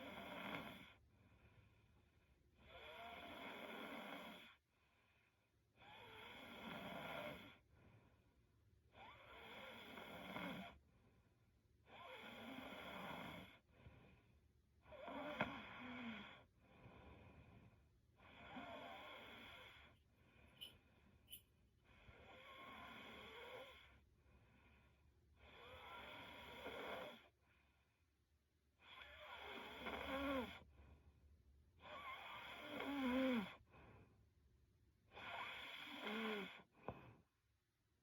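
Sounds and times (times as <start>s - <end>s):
woman snoring: 0.0s - 0.9s, 2.7s - 4.5s, 5.8s - 7.6s, 9.0s - 10.8s, 11.9s - 13.6s, 14.9s - 16.5s, 18.2s - 19.9s, 22.2s - 23.9s, 25.4s - 27.3s, 28.9s - 30.6s, 31.8s - 33.6s, 35.1s - 36.7s.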